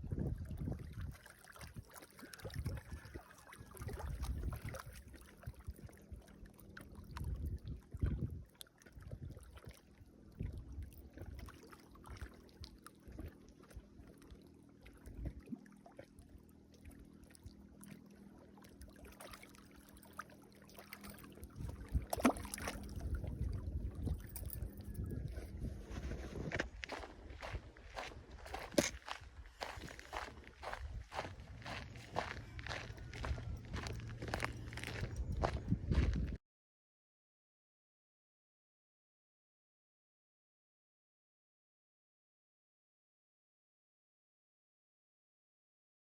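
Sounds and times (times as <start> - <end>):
wind buffeting microphone: 0.0 - 5.1, 7.1 - 9.6, 21.4 - 36.4
faint low hum: 2.3 - 36.4.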